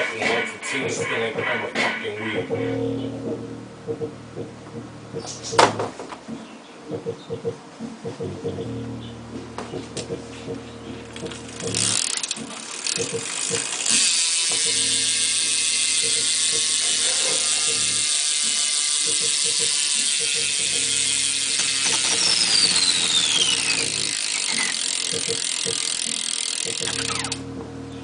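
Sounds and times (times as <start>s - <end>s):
bike hub ratcheting buzz: 9.7s - 27.5s.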